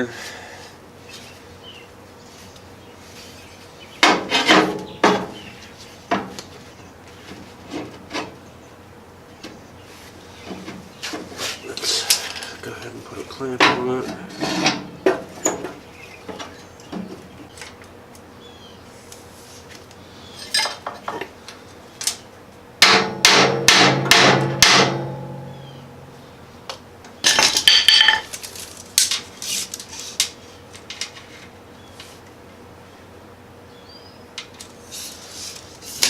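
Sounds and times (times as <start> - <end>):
hammer striking steel plate: 22.8 - 25.6.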